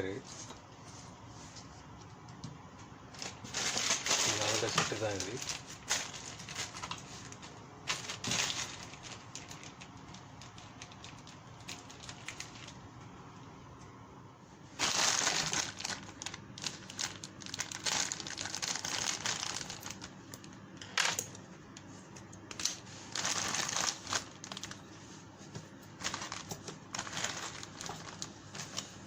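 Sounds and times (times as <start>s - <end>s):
plastic bags crinkling: 3.0s - 13.0s, 14.8s - 21.4s, 22.4s - 25.0s, 25.9s - 29.0s.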